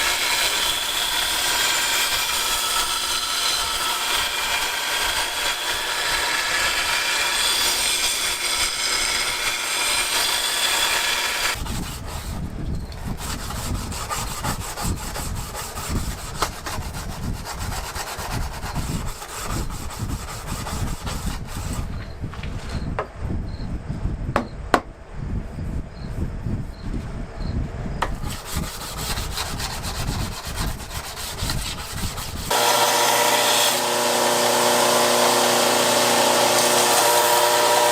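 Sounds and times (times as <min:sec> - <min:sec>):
hand rubbing or sawing strokes: 0:00.0 - 0:22.9, 0:28.0 - 0:37.9
steady machine noise: 0:32.5 - 0:37.9.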